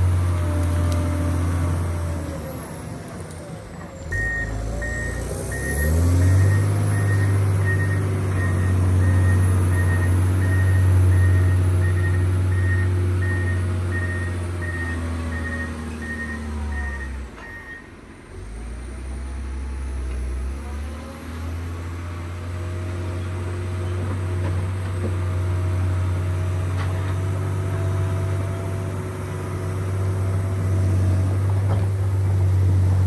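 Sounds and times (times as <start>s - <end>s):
diesel engine running under load: 0.0s - 33.0s
reversing alarm beeping: 4.1s - 17.9s.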